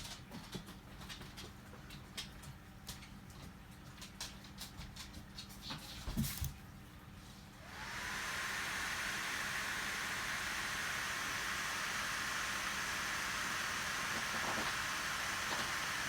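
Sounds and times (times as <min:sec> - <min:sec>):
laptop cooling fans rushing: 0:07.6 - 0:16.0.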